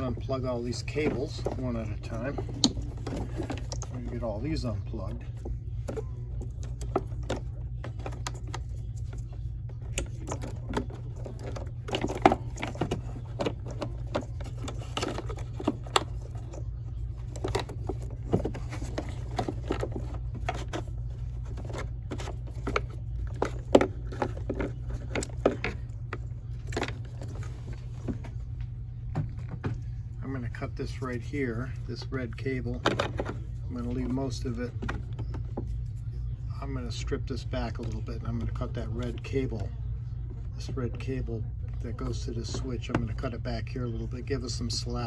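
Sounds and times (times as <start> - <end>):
connectors clicking and tapping: 0.0 - 29.9
steady low hum: 0.0 - 45.0.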